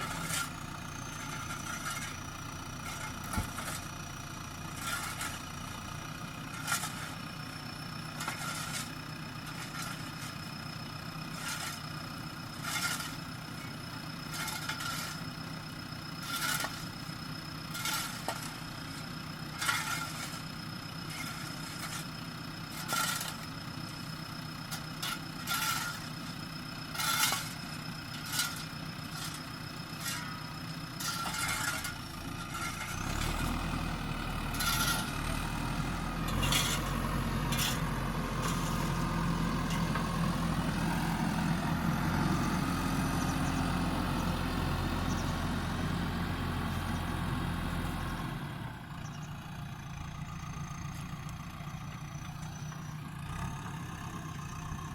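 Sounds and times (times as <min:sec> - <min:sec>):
metal clanks and scrapes: 0:00.0 - 0:07.3, 0:08.1 - 0:15.4, 0:16.2 - 0:41.1
diesel engine running: 0:00.0 - 0:54.9.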